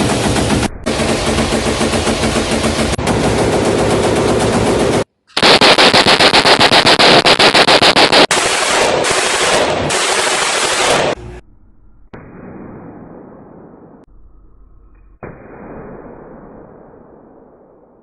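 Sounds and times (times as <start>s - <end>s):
automatic gunfire: 0.0s - 11.2s.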